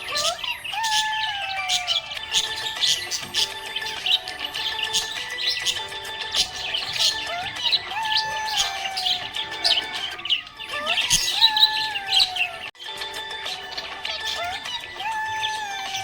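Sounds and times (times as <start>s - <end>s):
budgerigars chirping: 0.0s - 16.0s.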